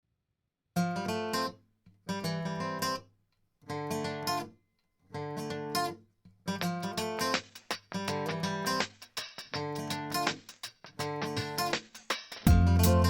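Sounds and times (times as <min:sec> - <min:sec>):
acoustic guitar music: 0:02.1 - 0:03.0, 0:03.7 - 0:04.5, 0:05.1 - 0:08.8, 0:09.6 - 0:10.3, 0:11.0 - 0:11.7, 0:12.5 - 0:13.0.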